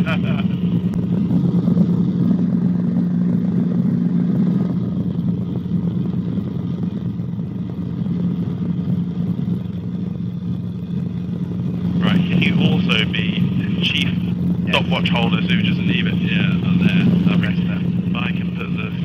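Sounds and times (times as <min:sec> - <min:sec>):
helicopter engine and rotors droning: 0:00.0 - 0:19.0.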